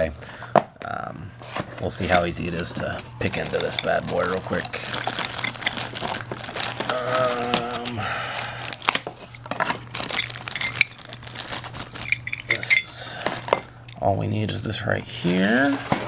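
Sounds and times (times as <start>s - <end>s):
packaging crinkling and tearing: 1.8s - 12.6s, 13.2s - 13.7s.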